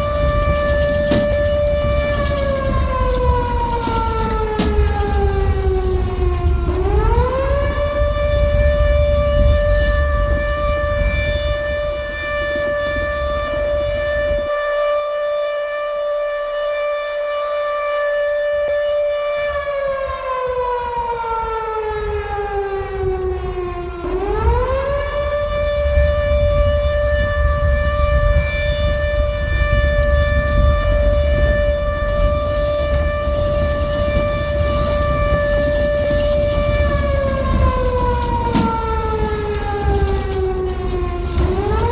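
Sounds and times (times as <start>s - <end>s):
alarm siren wailing: 0.0s - 41.9s
low rumble: 22.8s - 41.9s.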